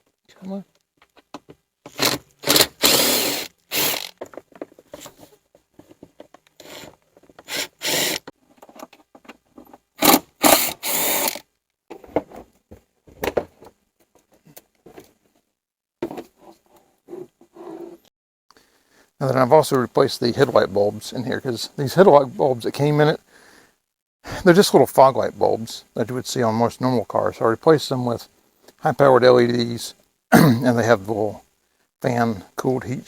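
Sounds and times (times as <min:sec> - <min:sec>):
cordless impact driver bursts: 0:02.0 - 0:04.1, 0:07.5 - 0:08.2, 0:10.0 - 0:11.4.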